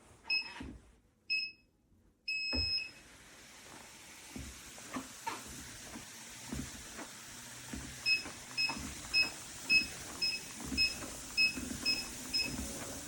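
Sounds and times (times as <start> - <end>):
footsteps on treadmill belt: 3.5 - 13.0.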